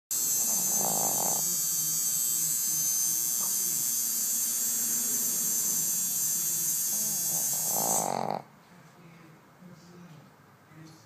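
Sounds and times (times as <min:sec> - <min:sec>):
low wavering snoring: 0:00.2 - 0:01.6, 0:04.7 - 0:06.0, 0:06.9 - 0:08.5.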